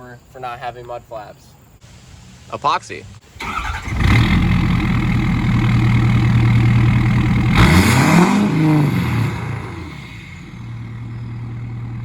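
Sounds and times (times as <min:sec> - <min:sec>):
diesel truck engine revving: 0:03.4 - 0:12.0.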